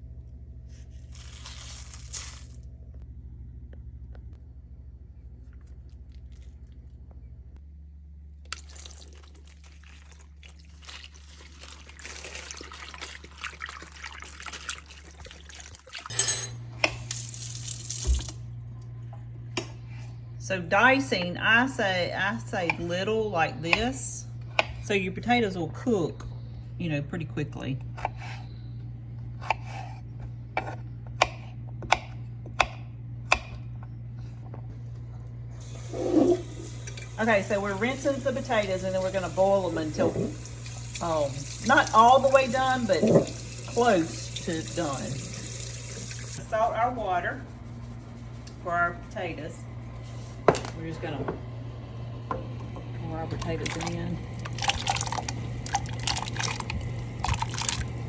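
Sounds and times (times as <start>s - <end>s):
steady low hum: 0.0s - 58.0s
tap water running into sink: 39.9s - 46.4s.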